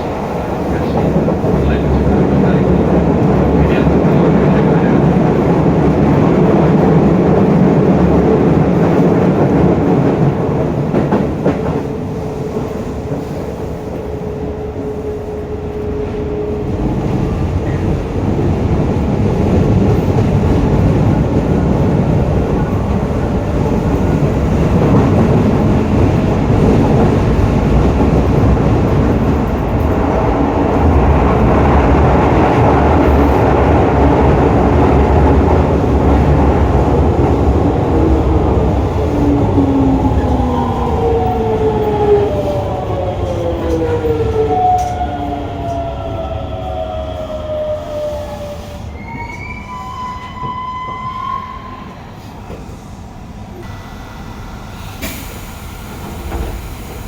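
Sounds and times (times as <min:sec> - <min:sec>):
train wheel and motor noise: 0:00.0 - 0:57.0.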